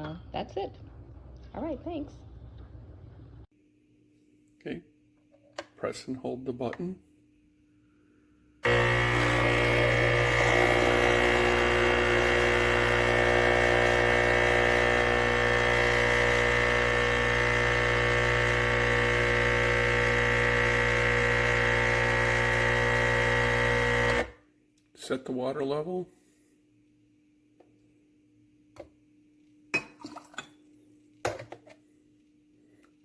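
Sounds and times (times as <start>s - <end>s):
espresso machine pump buzzing: 8.6s - 24.4s.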